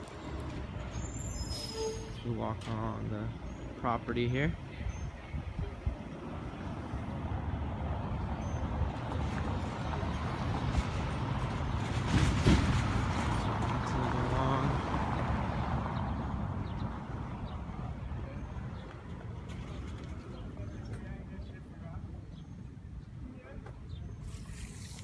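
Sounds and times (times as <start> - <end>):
vehicle engine rumble passing: 6.0 - 21.3.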